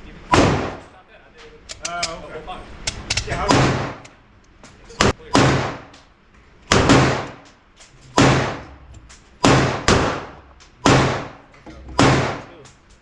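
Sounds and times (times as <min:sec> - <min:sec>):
gunshots with ringing echo: 0:06.7 - 0:07.4, 0:08.2 - 0:11.4, 0:12.0 - 0:12.5.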